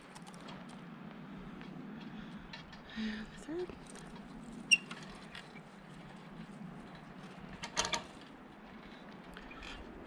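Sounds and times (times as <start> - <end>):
fence wire clicking and scraping: 6.9 - 10.0.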